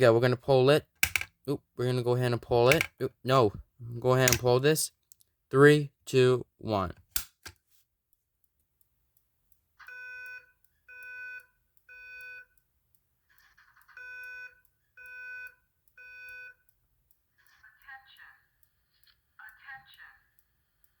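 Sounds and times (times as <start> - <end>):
fire alarm beeps: 9.9 - 12.6, 14.0 - 16.6.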